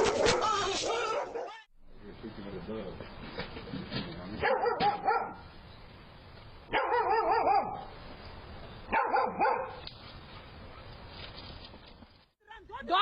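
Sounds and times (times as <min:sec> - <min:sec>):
dog barking: 0:00.0 - 0:01.7, 0:04.4 - 0:05.4, 0:06.7 - 0:07.9, 0:08.9 - 0:09.8.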